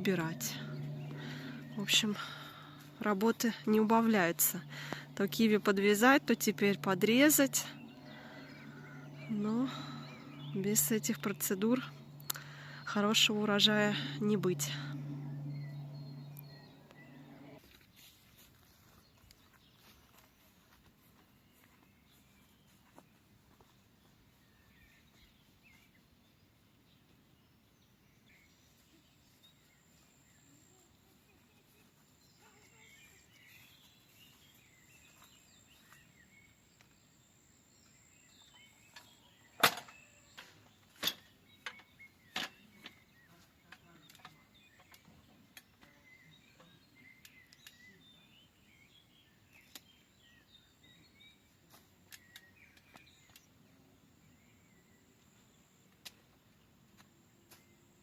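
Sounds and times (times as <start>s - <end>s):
thin steady high buzz: 0.0s - 17.6s
faint birds chirping: 0.0s - 58.0s.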